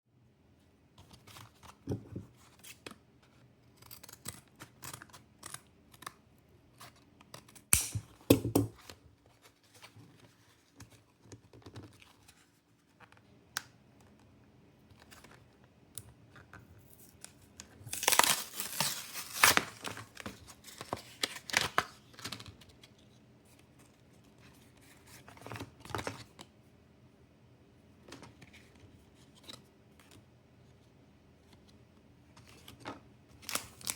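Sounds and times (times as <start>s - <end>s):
foil wrappers tearing and crinkling: 17.8s - 22.3s, 33.4s - 33.9s.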